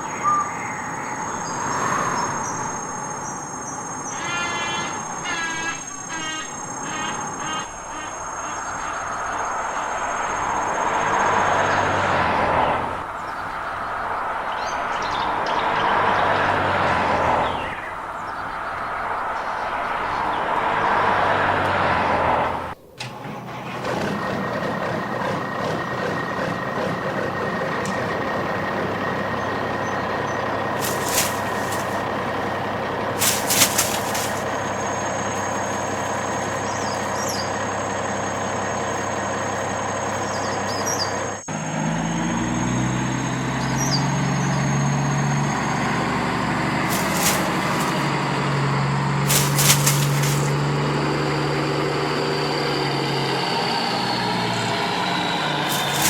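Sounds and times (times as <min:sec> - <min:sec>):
heavy truck engine running: 0:19.8 - 0:56.0
short sharp hisses: 0:33.2 - 0:34.6, 0:46.9 - 0:48.2, 0:49.3 - 0:50.6.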